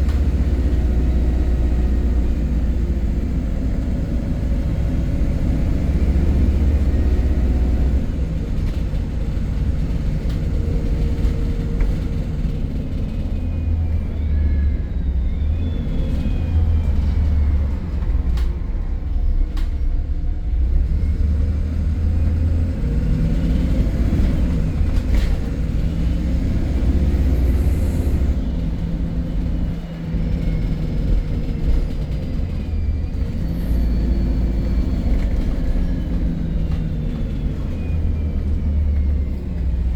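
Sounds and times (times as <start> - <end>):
bus engine rumble: 0.0 - 39.9.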